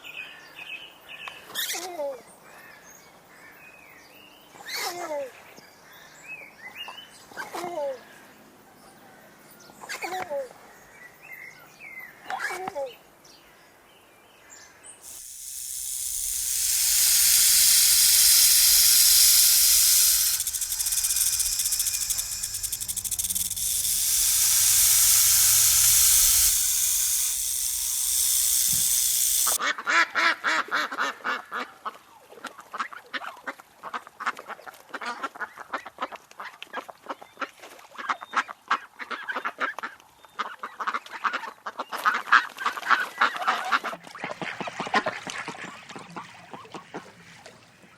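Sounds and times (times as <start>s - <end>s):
loud rushing hiss: 15.0s - 29.6s.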